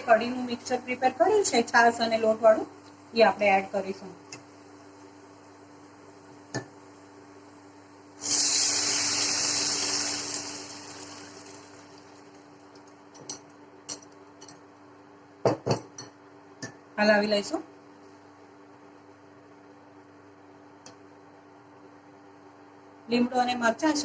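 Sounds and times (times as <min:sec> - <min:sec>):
batter sizzling in hot oil: 0:08.1 - 0:13.0.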